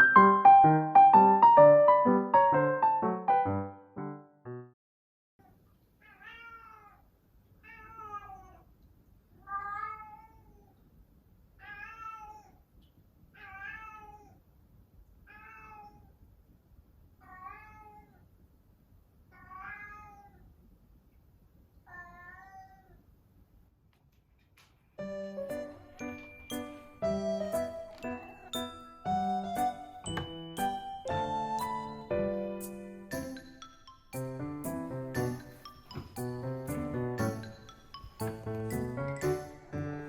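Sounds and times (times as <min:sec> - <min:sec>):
cat meowing: 0:06.0 - 0:08.7, 0:09.4 - 0:10.7, 0:11.6 - 0:12.6, 0:13.4 - 0:14.4, 0:15.3 - 0:16.1, 0:17.2 - 0:18.2, 0:19.3 - 0:20.5, 0:21.8 - 0:23.0.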